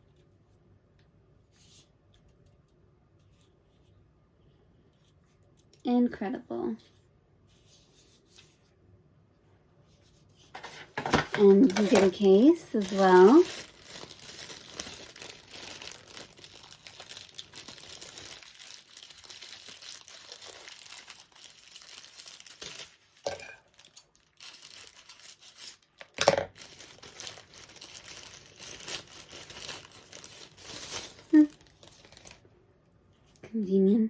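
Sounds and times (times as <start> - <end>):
packaging crinkling and rustling: 10.4 - 32.5.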